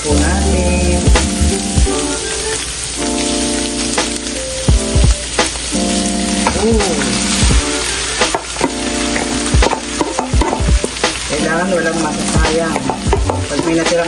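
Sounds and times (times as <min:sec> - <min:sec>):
rice sizzling in a wok: 0:00.0 - 0:14.0
ladle knocking and scraping wok: 0:08.2 - 0:11.3, 0:12.2 - 0:14.0.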